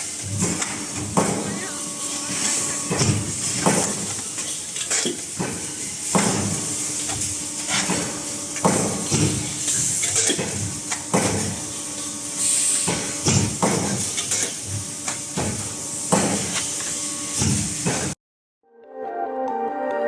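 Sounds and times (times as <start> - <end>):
hydraulic press humming: 0.0 - 4.4.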